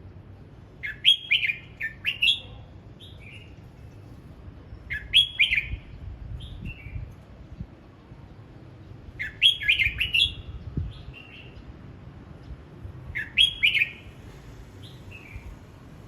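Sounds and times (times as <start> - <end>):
bird singing whistled notes: 0.8 - 3.5, 4.7 - 7.1, 9.2 - 11.6, 13.1 - 14.2, 14.8 - 15.6.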